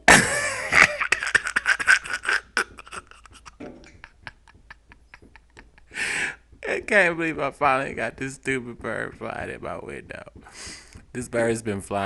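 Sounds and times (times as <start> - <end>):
man laughing breathily: 0.1 - 6.6.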